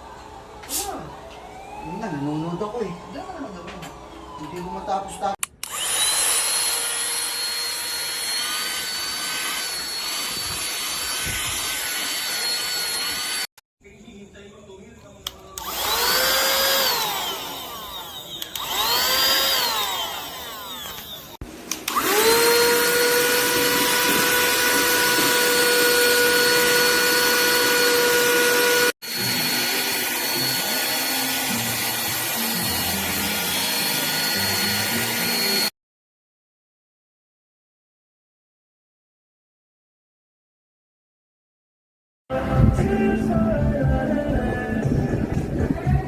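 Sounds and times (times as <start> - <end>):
vacuum cleaner motor whining: 0.0 - 13.5, 15.5 - 35.7.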